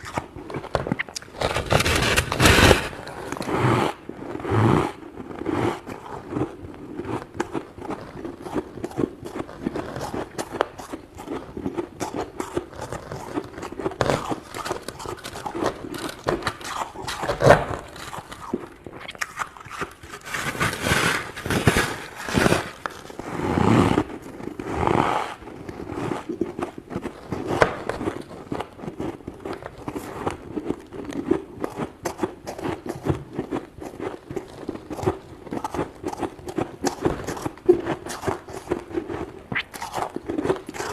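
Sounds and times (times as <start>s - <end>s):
frost being scraped: 1.3s - 4.0s, 19.2s - 24.1s.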